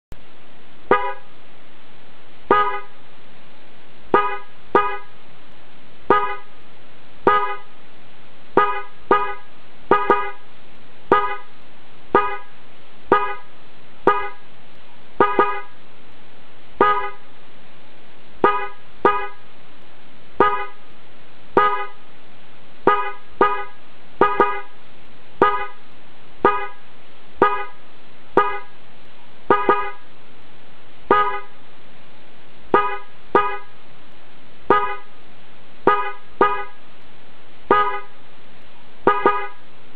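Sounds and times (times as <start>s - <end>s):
steady background hiss: 0.2s - 39.9s
electric horn short blasts: 0.9s - 1.3s, 2.5s - 3.0s, 4.2s - 5.1s, 6.1s - 6.5s, 7.3s - 7.7s, 8.6s - 10.4s, 11.1s - 11.5s, 12.2s - 12.5s, 13.1s - 13.5s, 14.1s - 14.4s, 15.2s - 15.8s, 16.8s - 17.3s, 18.4s - 19.4s, 20.4s - 20.8s, 21.6s - 22.0s, 22.9s - 24.8s, 25.4s - 25.8s, 26.4s - 26.8s, 27.4s - 27.8s, 28.4s - 28.7s, 29.5s - 30.0s, 31.1s - 31.5s, 32.7s - 33.7s, 34.7s - 35.1s, 35.9s - 36.8s, 37.7s - 38.1s, 39.1s - 39.6s.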